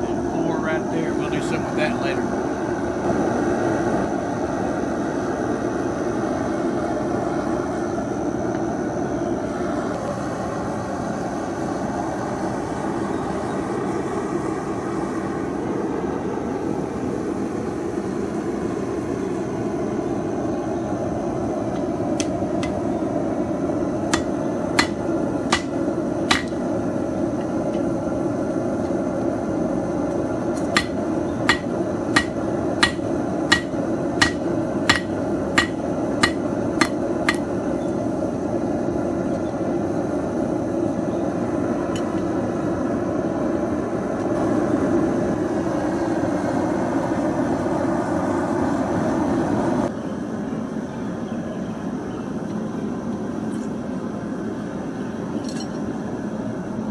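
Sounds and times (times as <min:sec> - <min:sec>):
hammer striking hot metal: 0:22.2 - 0:22.8, 0:24.1 - 0:26.6, 0:30.5 - 0:37.5.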